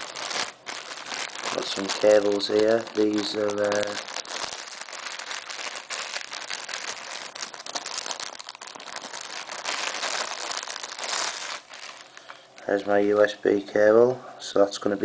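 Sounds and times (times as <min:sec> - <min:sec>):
packaging crinkling and rustling: 0:00.0 - 0:12.8.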